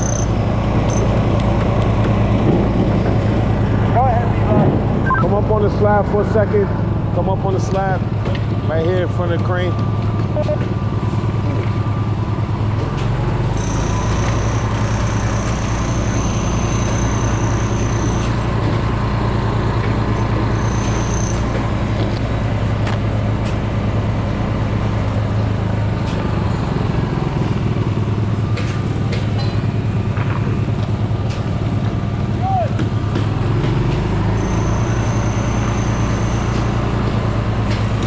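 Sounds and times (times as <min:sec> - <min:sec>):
construction machinery drone: 0:00.0 - 0:38.0
thin high whine: 0:13.5 - 0:19.1, 0:20.1 - 0:21.8, 0:34.4 - 0:38.0.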